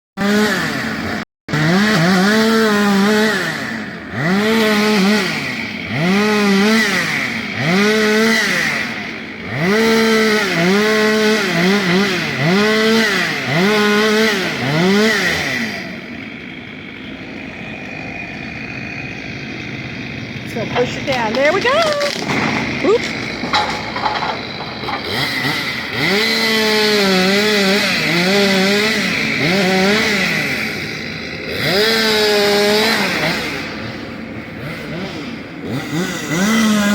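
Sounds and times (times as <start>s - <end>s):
chainsaw engine revving: 0.2s - 36.9s.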